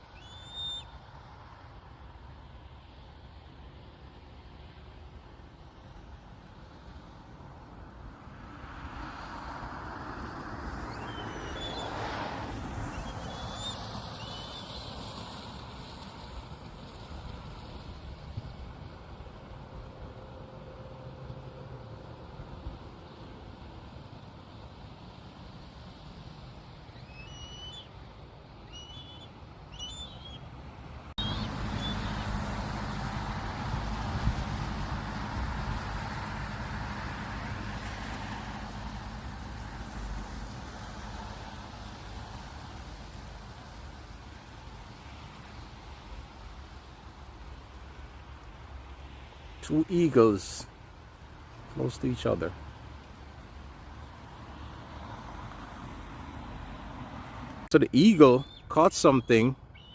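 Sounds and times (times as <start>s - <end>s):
high bird chirps: 0.0s - 0.9s, 12.9s - 14.9s, 26.9s - 27.9s, 28.6s - 30.5s, 31.2s - 32.2s, 58.4s - 59.9s
eagle high piping calls: 0.1s - 0.9s, 12.9s - 14.8s, 26.9s - 27.9s, 28.7s - 30.4s, 31.2s - 32.2s, 58.1s - 59.9s
vehicle passing by: 8.2s - 18.6s, 31.2s - 46.1s.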